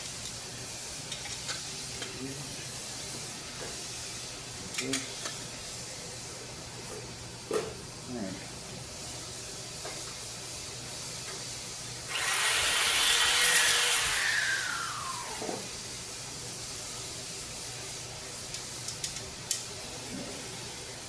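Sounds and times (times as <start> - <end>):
power tool motor winding down: 12.1 - 15.7.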